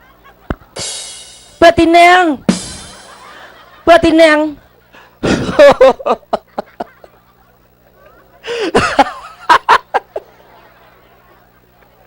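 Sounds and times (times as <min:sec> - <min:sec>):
short laughing breaths: 0:08.4 - 0:08.8.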